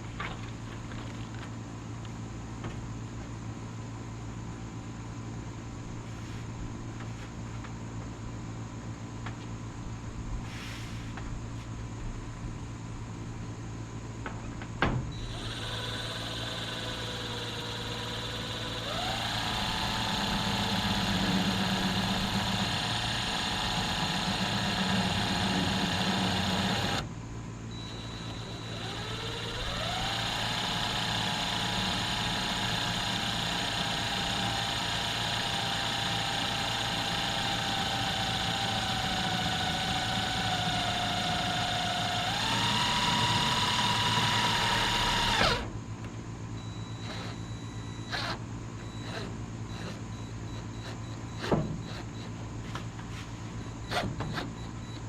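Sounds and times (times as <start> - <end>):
motor running and spinning up: 15.1 - 27.1, 27.7 - 45.7, 46.6 - 50.0.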